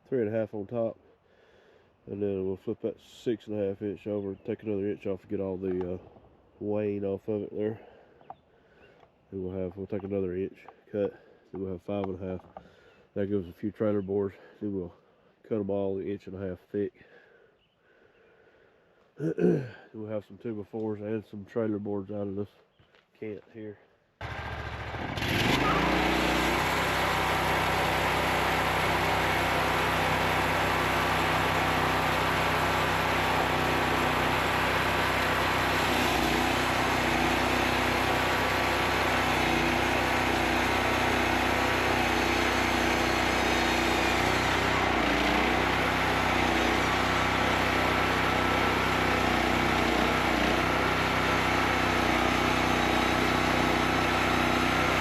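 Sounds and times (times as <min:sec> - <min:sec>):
sawmill engine running: 0:24.2 - 0:55.0.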